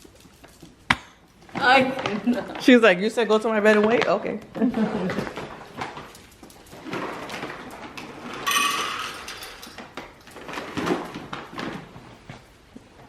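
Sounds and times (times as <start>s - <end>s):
dog crunching food: 5.1s - 8.5s.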